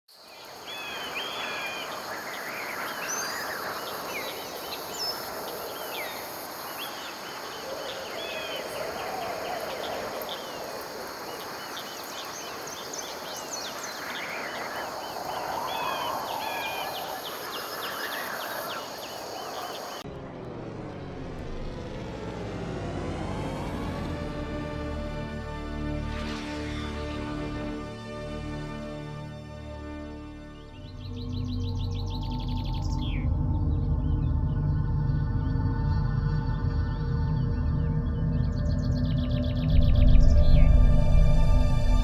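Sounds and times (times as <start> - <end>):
small birds chirping: 0.2 - 20.0
steady rushing noise: 0.4 - 28.3.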